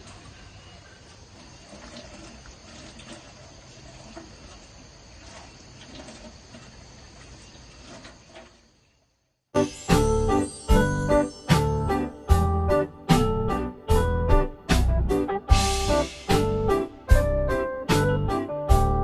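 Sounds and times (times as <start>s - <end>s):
insects chirring: 0.0s - 12.2s.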